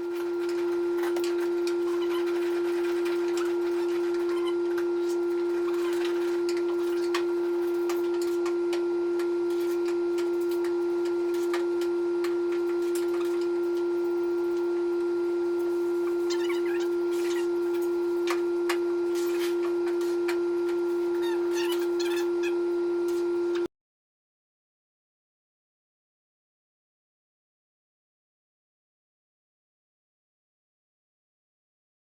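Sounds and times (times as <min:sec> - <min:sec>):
sander pad scratching: 0:00.1 - 0:23.4.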